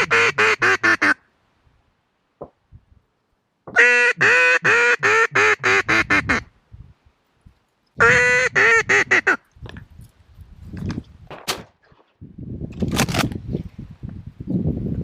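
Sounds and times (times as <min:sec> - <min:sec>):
duck call quacks: 0:00.0 - 0:01.2, 0:03.7 - 0:06.5, 0:08.0 - 0:09.4.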